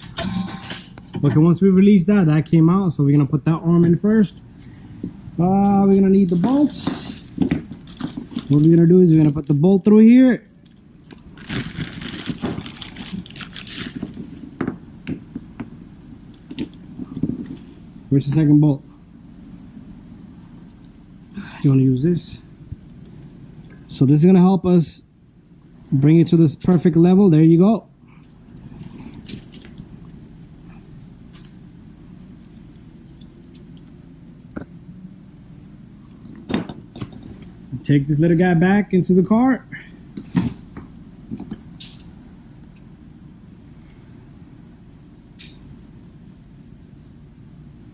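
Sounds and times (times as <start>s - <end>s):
metal parts scraping and rattling: 0.0s - 0.9s
steady low hum: 0.0s - 47.9s
sharp metallic clink: 31.3s - 32.0s.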